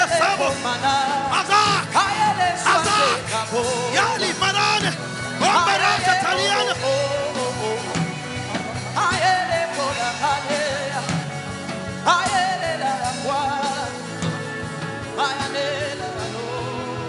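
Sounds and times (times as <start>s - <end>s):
person singing long phrases: 0.0s - 7.8s
drum beat: 1.3s - 9.4s.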